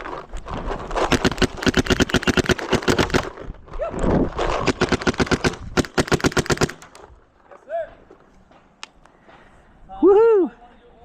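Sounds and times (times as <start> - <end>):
rapid gunshots: 1.0 - 3.4, 4.6 - 7.1.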